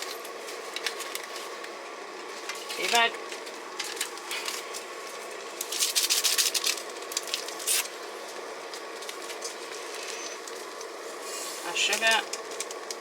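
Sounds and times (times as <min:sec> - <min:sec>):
plastic sachet crinkling: 0:00.0 - 0:11.0, 0:11.7 - 0:13.0
gas stove hissing: 0:00.0 - 0:13.0.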